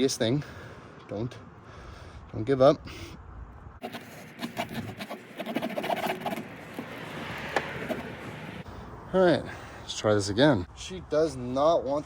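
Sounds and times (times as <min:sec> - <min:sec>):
tool scraping into tire: 0:03.8 - 0:08.6.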